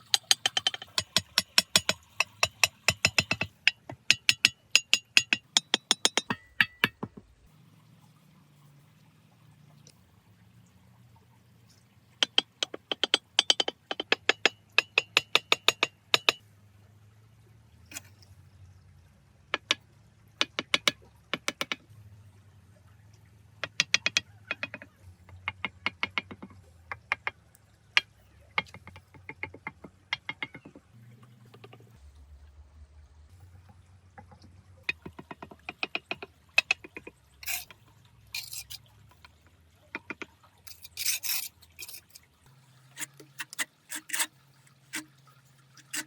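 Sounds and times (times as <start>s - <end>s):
small hard objects clicking together: 0.0s - 6.4s, 23.6s - 27.3s, 34.9s - 37.7s, 38.4s - 39.3s.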